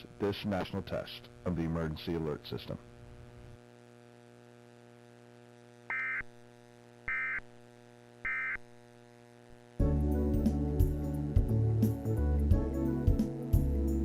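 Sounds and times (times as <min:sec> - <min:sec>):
faint steady hum: 0:00.0 - 0:14.0
digital data tone bursts: 0:05.9 - 0:06.3, 0:07.1 - 0:07.4, 0:08.3 - 0:08.6.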